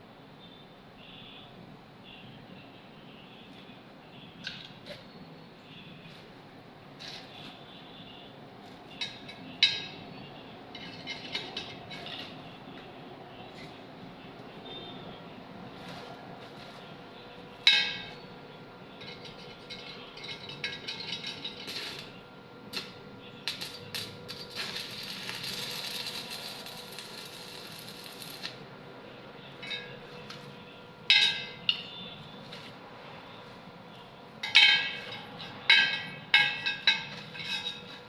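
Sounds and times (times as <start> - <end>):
metal clanking on metal: 10.7 - 12.3, 17.7 - 18.2, 19.0 - 22.1, 31.1 - 32.0, 34.4 - 38.0
welding arc crackling and hissing: 21.4 - 28.6.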